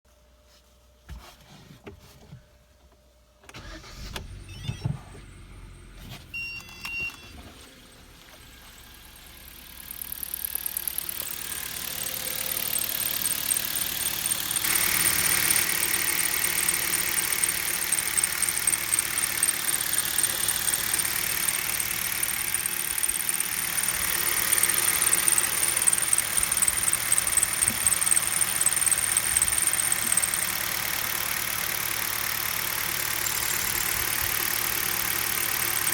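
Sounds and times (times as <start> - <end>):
car engine starting and idling: 3.4 - 35.9
high-pitched drive belt squeak: 3.6 - 5.2, 9.9 - 31.1, 33.0 - 34.2, 34.9 - 35.9.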